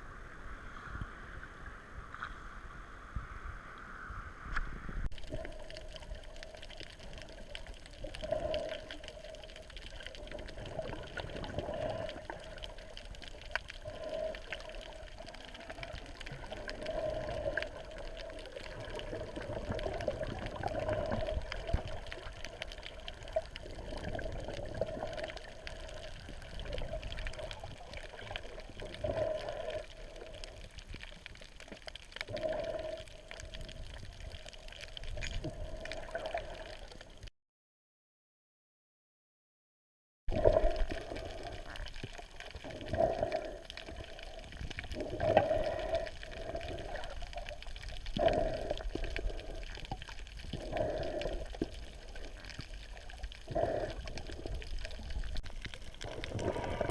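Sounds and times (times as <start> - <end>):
water sloshing and gurgling: 4.4 - 37.3, 40.3 - 56.9.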